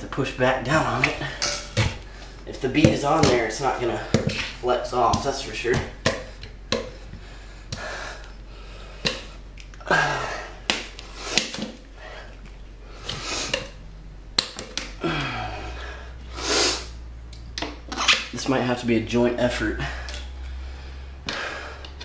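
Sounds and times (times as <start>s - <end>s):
tire irons clinking on wheel rim: 0.8s - 7.1s
strained breaths: 1.2s - 2.5s, 6.2s - 13.8s, 14.9s - 17.1s, 19.6s - 22.0s.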